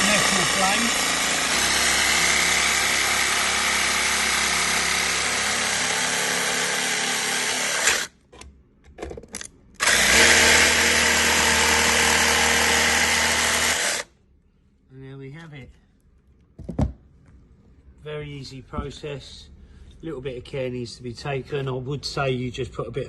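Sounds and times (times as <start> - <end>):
jigsaw cutting plastic panel: 0.0 - 8.1, 9.8 - 14.1.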